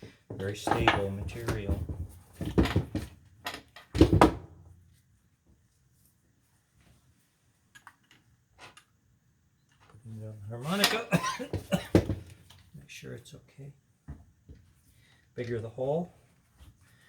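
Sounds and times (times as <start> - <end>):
objects thumping on a workbench: 0.3 - 4.5, 10.8 - 12.4.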